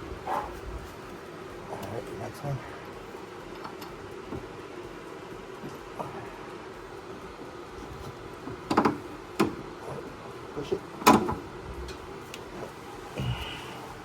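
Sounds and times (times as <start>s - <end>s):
metal clunks and knocks: 8.0s - 9.6s, 11.0s - 12.0s.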